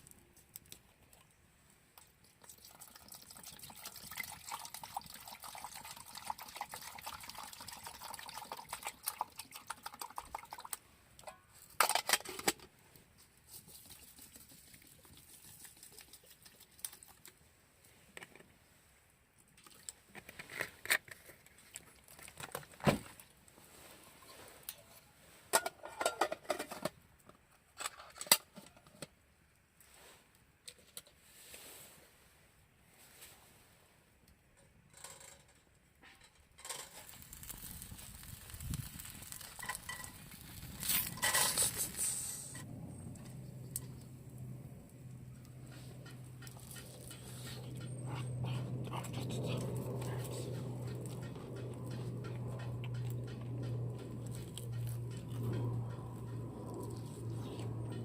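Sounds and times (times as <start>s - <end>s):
water pouring into a container: 2.4s - 10.8s.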